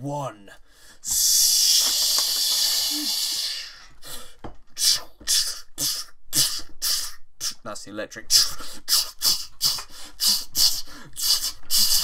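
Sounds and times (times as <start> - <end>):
hissing crackles: 1.1 - 3.8
man imitating electrical surge: 1.1 - 3.8, 4.8 - 7.6, 8.3 - 12.0.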